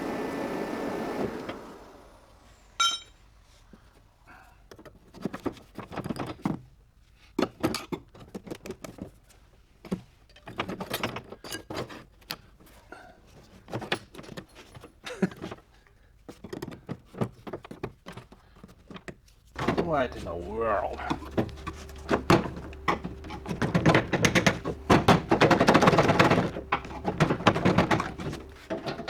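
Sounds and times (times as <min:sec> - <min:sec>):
metal tools clinking on metal: 0:02.8 - 0:03.1.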